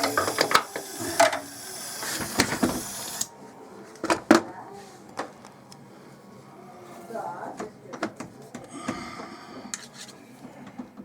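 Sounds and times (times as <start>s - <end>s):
torch flame hissing: 0.0s - 3.3s.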